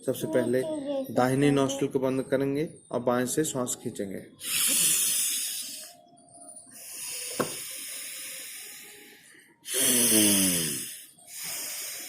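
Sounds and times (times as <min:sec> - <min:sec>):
nasal breathing: 0:04.4 - 0:06.0, 0:06.7 - 0:12.0.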